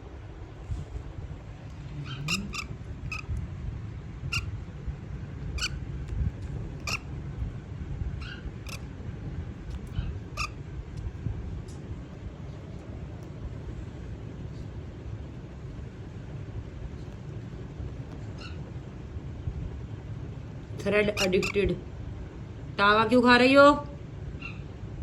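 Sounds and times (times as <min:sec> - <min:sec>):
low background rumble: 0:00.0 - 0:25.0
parrot chirping: 0:02.0 - 0:03.4, 0:04.3 - 0:04.6, 0:05.5 - 0:05.8, 0:06.6 - 0:07.1, 0:08.2 - 0:08.9, 0:09.6 - 0:10.6, 0:21.1 - 0:21.6.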